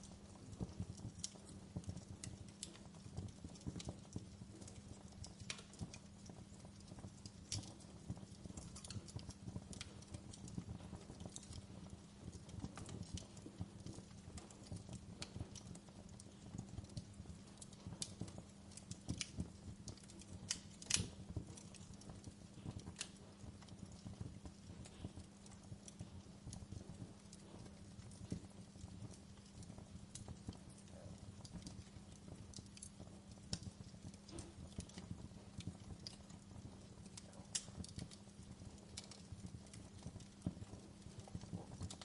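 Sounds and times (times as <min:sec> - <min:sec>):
wood fire crackling: 0:00.0 - 0:42.0.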